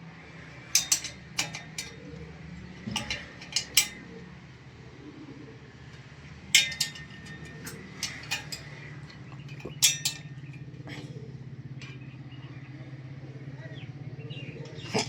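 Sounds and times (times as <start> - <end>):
metal tools clinking together: 0.7 - 4.2, 6.5 - 11.2, 11.8 - 12.1.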